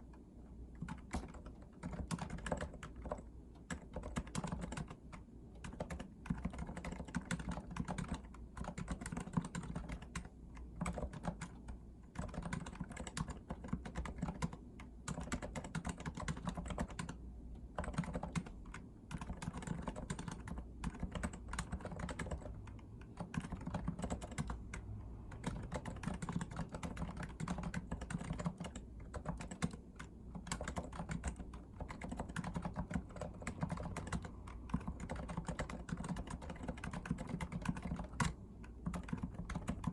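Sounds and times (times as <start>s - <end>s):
fast keyboard typing: 0.8s - 39.9s.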